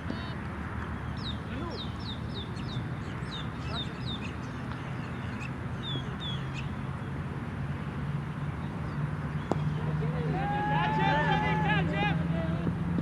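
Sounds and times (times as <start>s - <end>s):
birds chirping: 0.9s - 6.9s.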